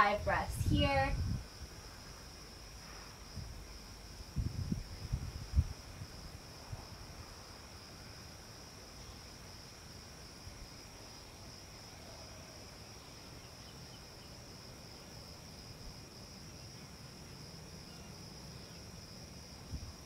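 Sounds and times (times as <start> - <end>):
low outdoor rumble: 0.0 - 2.7
crickets trilling: 0.0 - 20.0.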